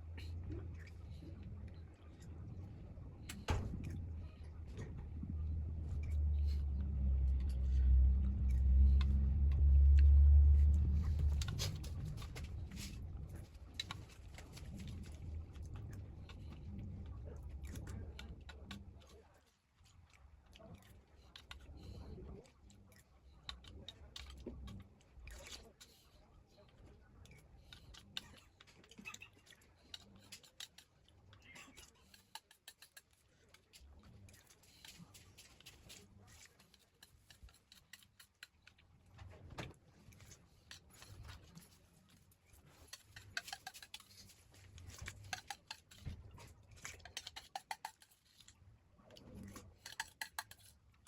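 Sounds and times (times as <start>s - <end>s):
low background hum: 0.0s - 51.0s
low rumble: 2.4s - 13.9s.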